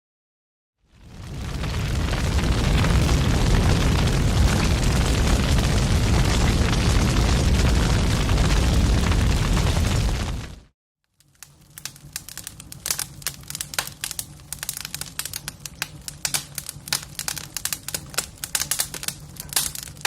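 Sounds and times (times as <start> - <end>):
large fire rumbling and hissing: 0.8 - 20.0.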